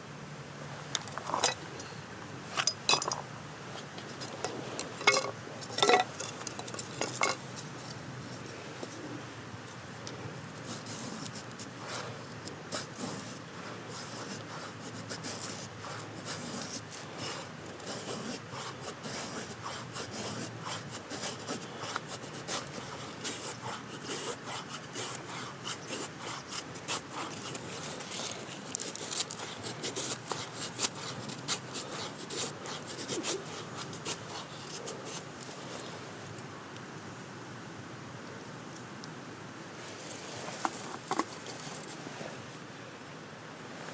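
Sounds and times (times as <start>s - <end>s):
knife shaving wood: 10.5s - 35.9s.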